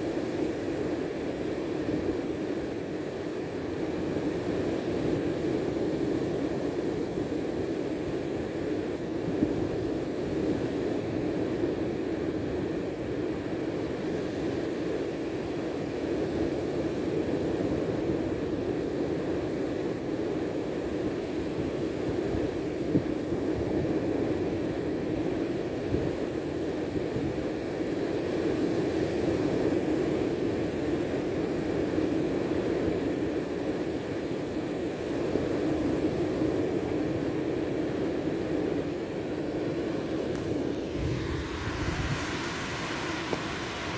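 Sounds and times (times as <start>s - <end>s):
high hiss: 40.4s - 43.9s.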